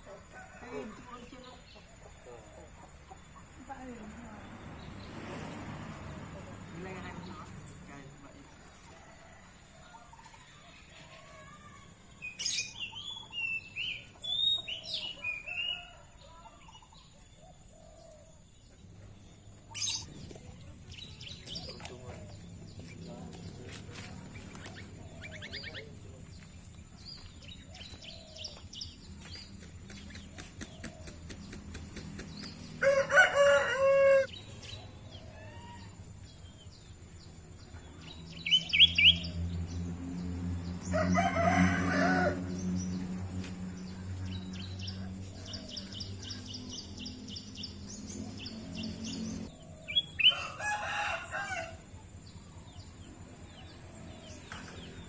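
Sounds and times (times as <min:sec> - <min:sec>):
songbird chirping: 0:00.0 - 0:55.0
rooster crowing: 0:08.9 - 0:12.0, 0:14.6 - 0:16.7, 0:32.7 - 0:34.4, 0:40.7 - 0:42.9, 0:48.4 - 0:52.0.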